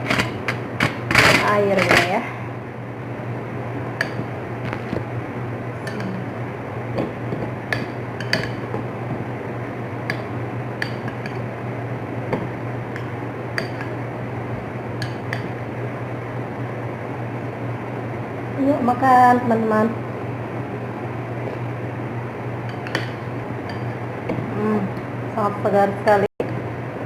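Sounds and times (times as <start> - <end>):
steady low hum: 0.0 - 27.0
spoon clinking against bowl: 7.0 - 8.8, 10.1 - 11.4, 13.0 - 14.0, 15.0 - 15.6, 22.7 - 24.0.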